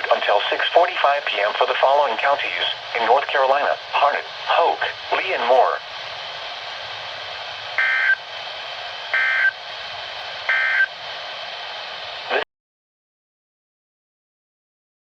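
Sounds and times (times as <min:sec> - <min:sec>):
radio hiss: 0:00.0 - 0:12.5
short data bursts: 0:07.8 - 0:08.2, 0:09.1 - 0:09.6, 0:10.5 - 0:10.9.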